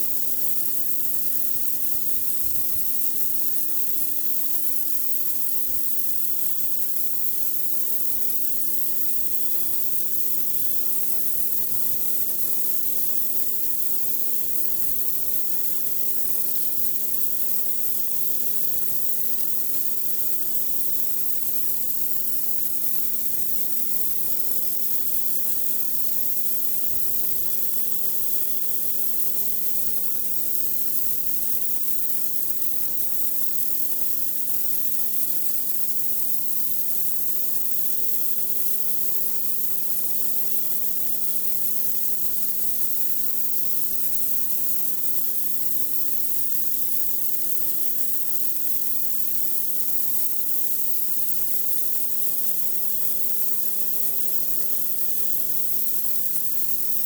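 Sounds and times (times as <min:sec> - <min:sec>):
pressure washer machine hum: 0:21.8 - 0:26.2.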